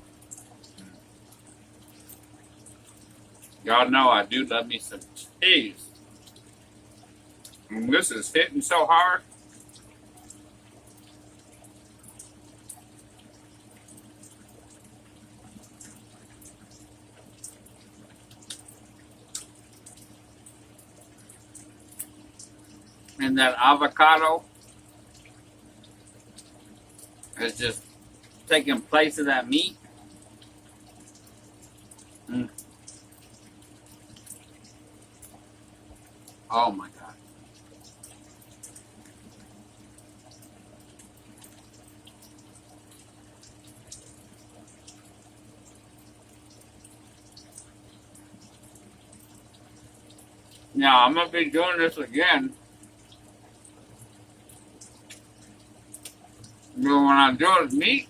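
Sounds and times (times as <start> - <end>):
steady low hum: 0.0 - 58.0
chewing with wet mouth clicks: 15.7 - 20.1, 54.8 - 56.5.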